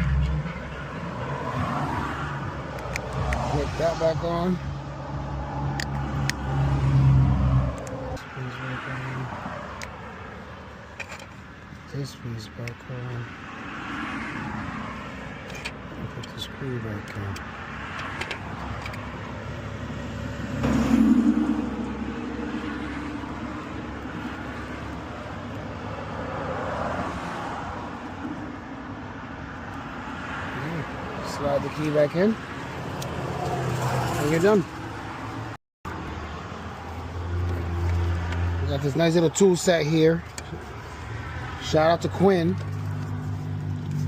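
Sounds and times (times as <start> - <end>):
road traffic noise: 0.0 - 44.0.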